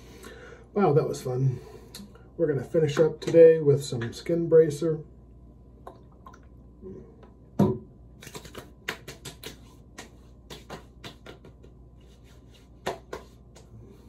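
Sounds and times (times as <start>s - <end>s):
hands slapping face: 8.2s - 13.7s.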